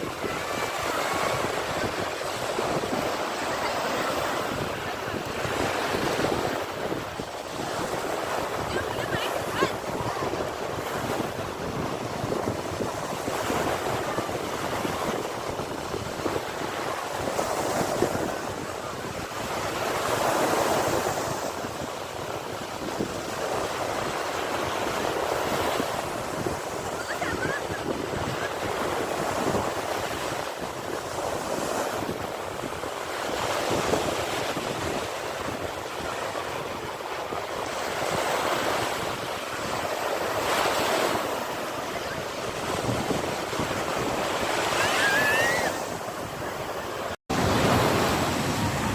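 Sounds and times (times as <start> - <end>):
sea waves breaking on shore: 0.0 - 48.9
wind on microphone: 0.0 - 48.9.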